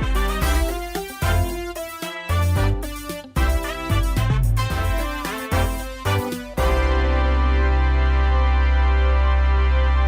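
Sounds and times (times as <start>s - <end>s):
deep bass: 0.0s - 1.6s, 2.4s - 2.8s, 3.4s - 10.0s
sustained music chord: 6.6s - 10.0s.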